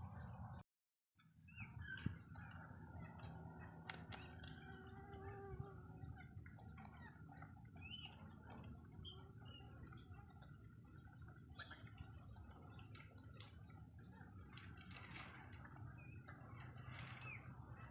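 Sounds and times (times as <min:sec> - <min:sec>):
low background hum: 0:01.2 - 0:17.9
rabbits chewing food: 0:02.1 - 0:17.9
faint bird chirps: 0:04.1 - 0:10.3.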